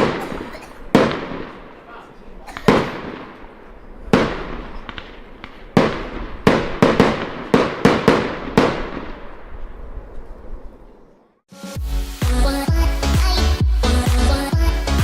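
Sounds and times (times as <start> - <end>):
firework bangs with echo: 0.0 - 1.9, 2.5 - 9.7
faint firework pops: 4.1 - 9.0.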